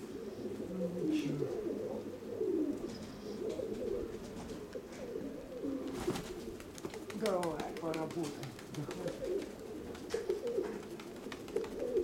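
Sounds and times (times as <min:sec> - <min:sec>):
pigeons cooing: 0:00.0 - 0:12.0.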